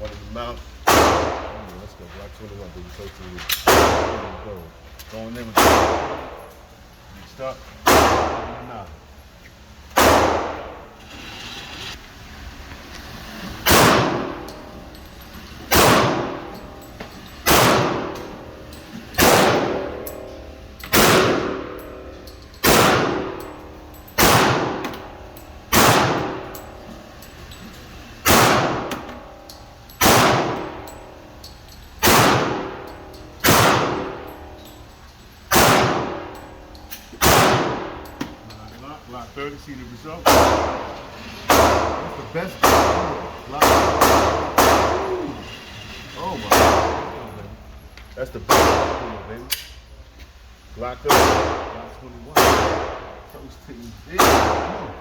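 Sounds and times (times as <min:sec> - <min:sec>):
pistol shots echoing: 0:00.8 - 0:01.6, 0:03.6 - 0:04.4, 0:05.5 - 0:06.4, 0:07.8 - 0:08.6, 0:09.9 - 0:10.8, 0:13.6 - 0:14.5, 0:15.7 - 0:16.6, 0:17.4 - 0:18.4, 0:19.1 - 0:20.1, 0:20.9 - 0:21.8, 0:22.6 - 0:23.6, 0:24.2 - 0:26.6, 0:28.2 - 0:29.2, 0:30.0 - 0:30.9, 0:32.0 - 0:34.3, 0:35.5 - 0:36.4, 0:37.2 - 0:38.0, 0:40.2 - 0:45.2, 0:46.5 - 0:47.2, 0:48.5 - 0:49.3, 0:51.1 - 0:53.2, 0:54.2 - 0:55.0.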